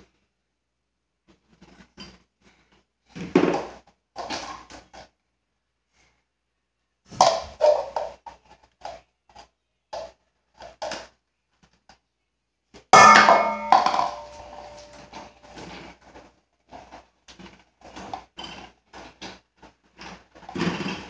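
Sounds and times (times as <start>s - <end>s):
crockery clattering: 13.0s - 15.4s
dishes knocking and clinking: 13.0s - 15.4s.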